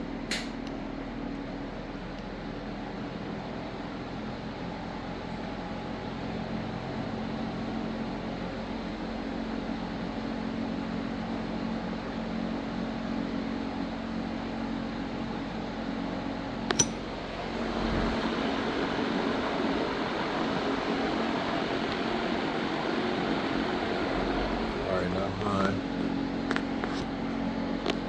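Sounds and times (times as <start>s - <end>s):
box fan running: 0.0s - 28.0s
fan speed switch click: 0.3s - 0.8s, 16.7s - 17.1s.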